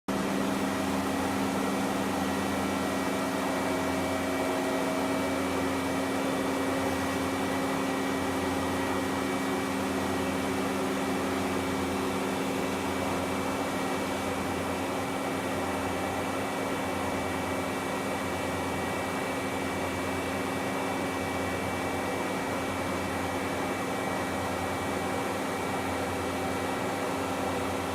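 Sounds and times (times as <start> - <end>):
machining center humming: 0.1 - 16.2.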